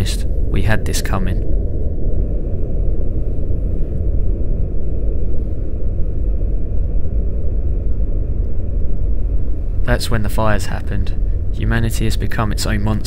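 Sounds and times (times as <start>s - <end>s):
loud low rumble: 0.0s - 13.0s.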